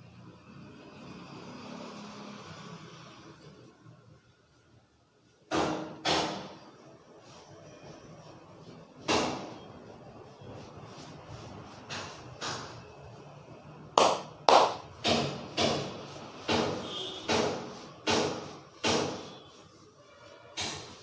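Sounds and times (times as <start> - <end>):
hands slapping a person: 14.0 - 15.9.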